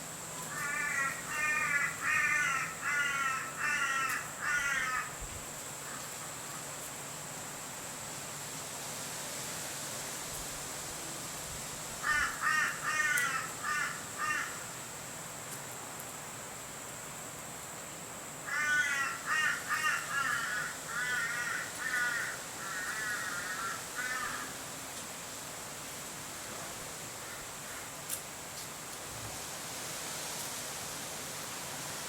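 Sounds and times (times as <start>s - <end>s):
bird cawing: 0.5s - 5.1s, 12.0s - 14.6s, 18.5s - 24.6s.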